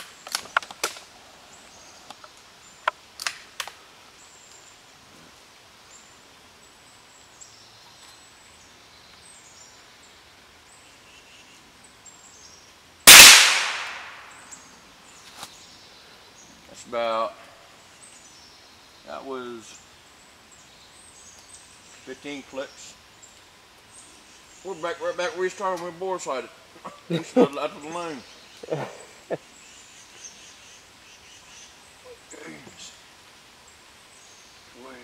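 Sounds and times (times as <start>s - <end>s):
rifle shot: 13.1s - 14.4s.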